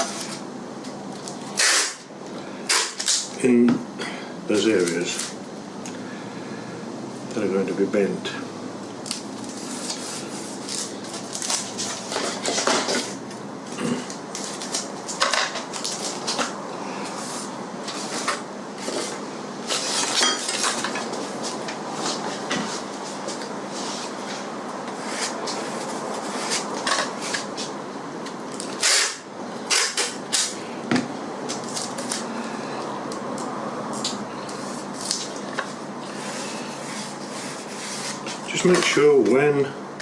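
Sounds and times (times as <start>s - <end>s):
masking tape rasping off roll: 1.6s - 2.1s, 28.8s - 30.5s.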